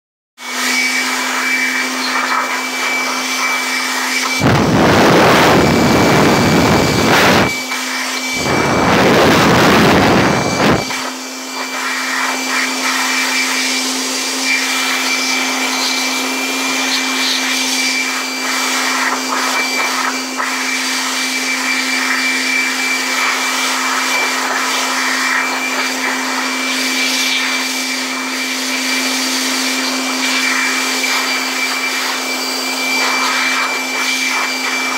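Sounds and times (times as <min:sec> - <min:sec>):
air blower humming and whining: 0:00.4 - 0:34.9
blasts of air: 0:03.1 - 0:13.8.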